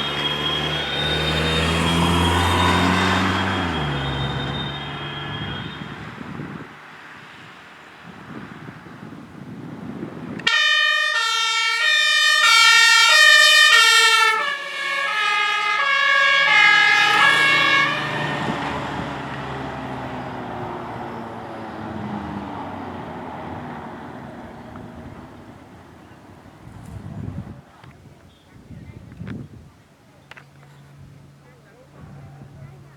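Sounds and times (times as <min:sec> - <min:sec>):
two-tone siren: 0:00.0 - 0:06.8, 0:10.4 - 0:25.4
fire engine engine: 0:00.0 - 0:32.9
road noise: 0:00.0 - 0:32.9.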